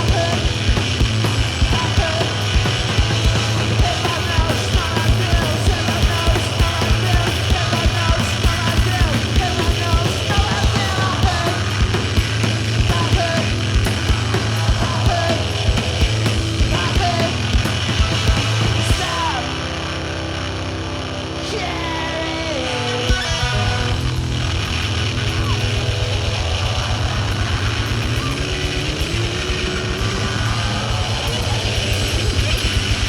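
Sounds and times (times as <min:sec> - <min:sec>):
fast steady drumming: 0:00.0 - 0:19.4
live punk rock band: 0:00.0 - 0:33.0.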